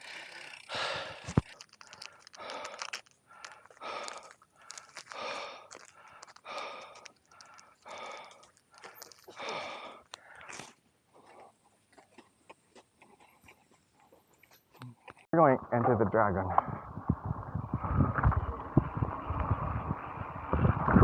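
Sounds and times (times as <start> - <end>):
man breathing heavily: 0.0 - 11.6.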